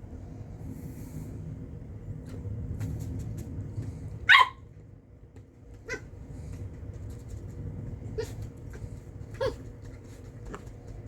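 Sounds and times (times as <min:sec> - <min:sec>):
puppy barking: 0:04.2 - 0:04.7.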